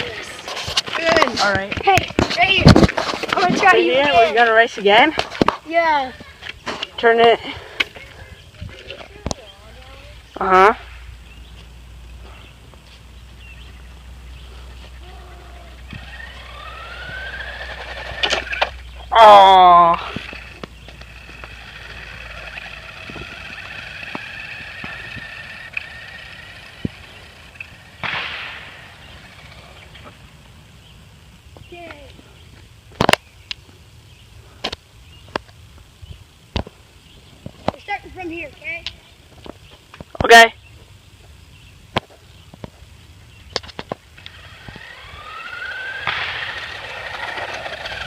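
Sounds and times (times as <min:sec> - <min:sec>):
wheels rushing: 0:00.0 - 0:32.6, 0:40.7 - 0:48.0
electric motor whining: 0:14.7 - 0:30.4, 0:44.2 - 0:48.0.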